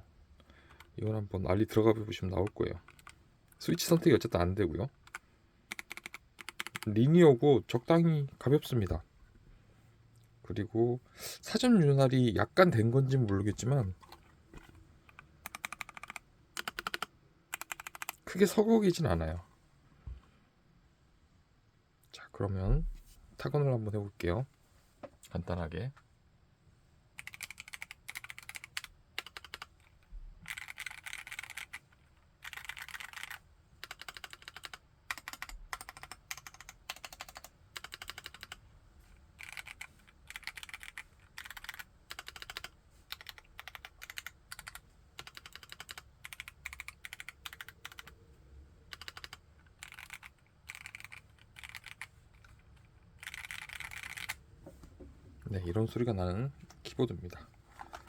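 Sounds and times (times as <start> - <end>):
mechanical keyboard typing: 2.4 - 4.1, 5.0 - 6.9, 15.1 - 18.2, 27.2 - 29.7, 30.4 - 38.6, 39.4 - 48.1, 48.9 - 52.6, 53.2 - 54.4.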